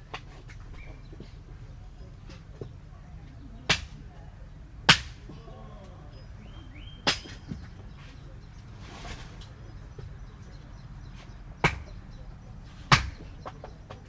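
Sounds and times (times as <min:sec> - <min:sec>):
hammer striking tent pegs: 0:03.7 - 0:04.0, 0:04.9 - 0:05.3, 0:07.1 - 0:07.7, 0:11.6 - 0:12.0, 0:12.9 - 0:13.4.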